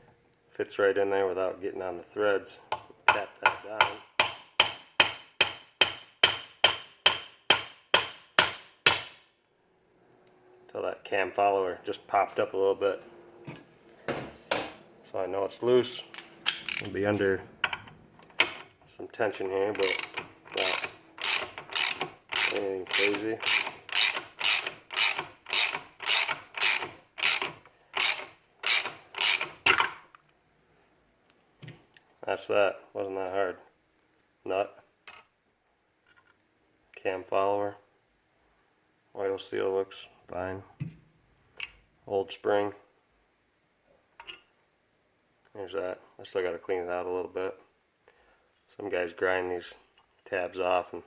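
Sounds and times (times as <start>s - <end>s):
hand ratchet clicking: 16.5s - 17.0s, 19.7s - 29.8s.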